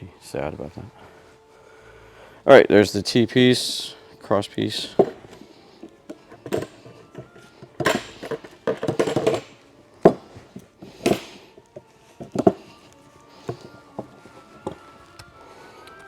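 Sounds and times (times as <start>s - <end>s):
knocks clanks and rattles: 4.8s - 5.4s, 6.1s - 12.7s.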